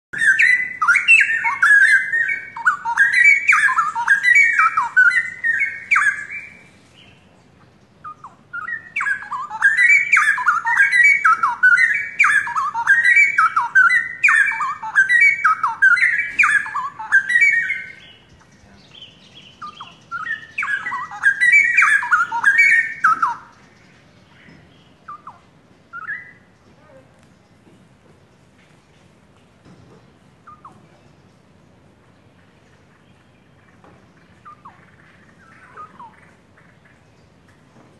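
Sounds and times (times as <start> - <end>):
bulbul warbling song: 0.2 - 26.6, 30.4 - 31.0, 33.0 - 37.4.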